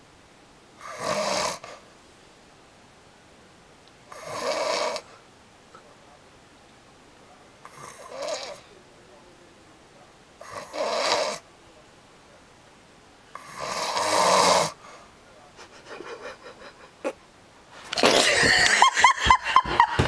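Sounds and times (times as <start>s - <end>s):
man snoring: 0.8s - 1.8s, 4.1s - 5.1s, 7.7s - 8.7s, 10.4s - 11.4s, 13.4s - 14.8s.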